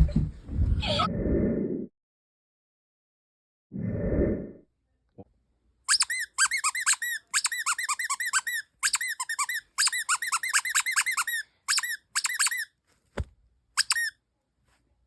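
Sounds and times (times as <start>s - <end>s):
high-pitched squeaks: 5.9s - 12.7s, 13.8s - 14.1s.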